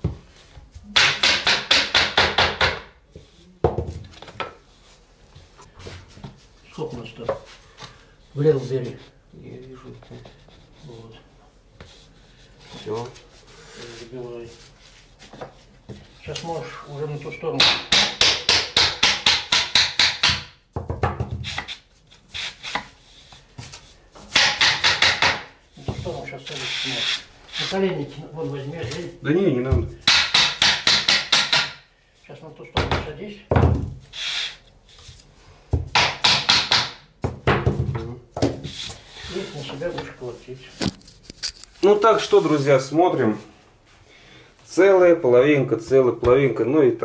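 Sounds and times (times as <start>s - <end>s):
hammer knocking floorboards: 3.6s - 4.5s, 19.9s - 21.5s, 32.8s - 34.0s, 35.7s - 38.7s.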